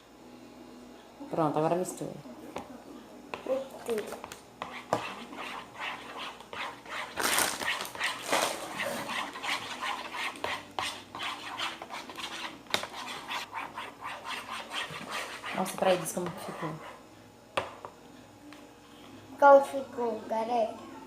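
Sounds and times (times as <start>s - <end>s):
spoon stirring sticky mix: 3.4s - 17.0s.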